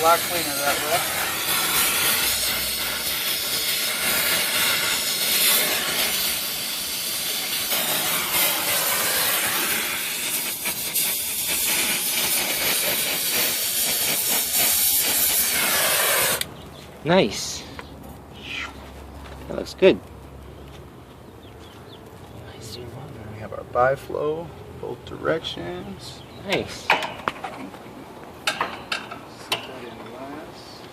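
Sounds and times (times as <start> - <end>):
torch flame hissing: 0.0 - 16.5.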